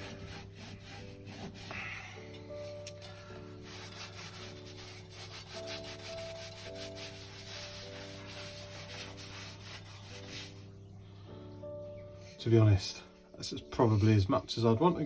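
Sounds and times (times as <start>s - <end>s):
back-and-forth rubbing strokes: 0.0s - 1.8s, 2.5s - 10.8s, 13.7s - 14.5s
soft background music: 0.0s - 15.0s.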